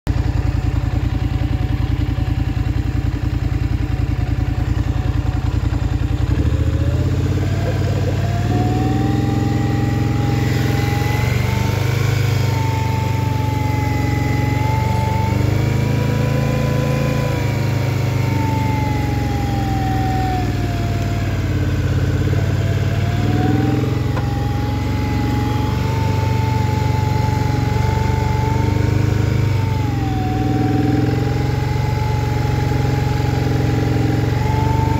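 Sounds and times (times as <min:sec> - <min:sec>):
atv engine running: 0:00.1 - 0:34.9
high whine: 0:00.4 - 0:31.6.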